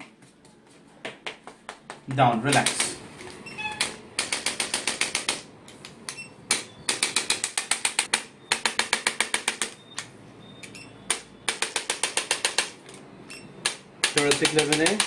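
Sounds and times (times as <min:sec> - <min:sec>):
rapid mechanical clicks: 0:13.6 - 0:15.0.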